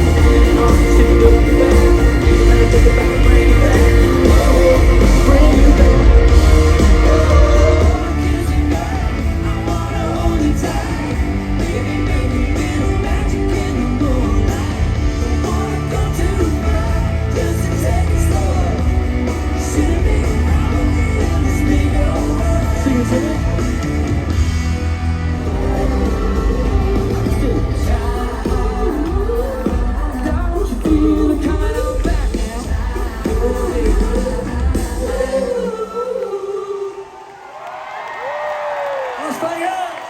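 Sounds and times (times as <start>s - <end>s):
person singing: 0.0s - 24.1s, 25.3s - 37.2s
guitar: 0.0s - 35.7s.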